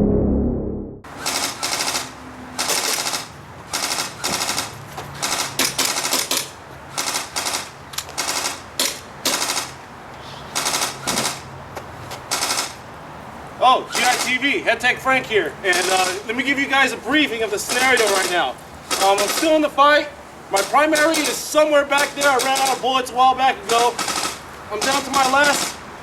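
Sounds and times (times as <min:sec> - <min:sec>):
airsoft guns full-auto bursts: 0:01.2 - 0:09.8, 0:10.6 - 0:11.4, 0:13.9 - 0:14.4, 0:15.7 - 0:16.2, 0:17.7 - 0:19.7, 0:20.6 - 0:22.9, 0:23.7 - 0:25.8.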